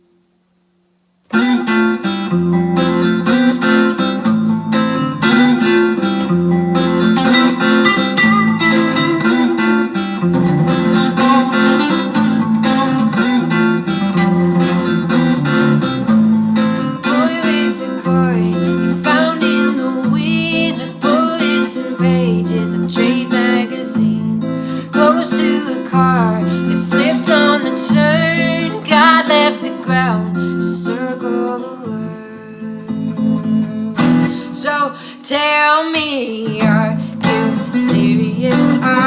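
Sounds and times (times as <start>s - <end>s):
solo guitar riff: 1.3s - 39.0s.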